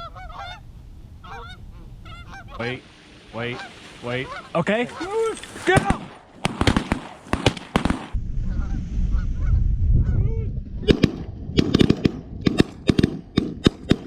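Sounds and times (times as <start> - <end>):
geese honking: 0.0 - 0.6, 1.2 - 5.6
shotgun blasts: 5.6 - 8.2, 10.8 - 14.0
low rumble: 8.1 - 13.4.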